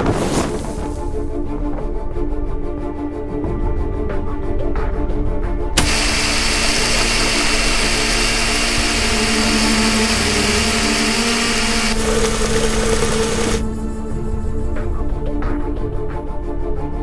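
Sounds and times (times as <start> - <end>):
mixer grinder whirring: 5.8 - 13.9.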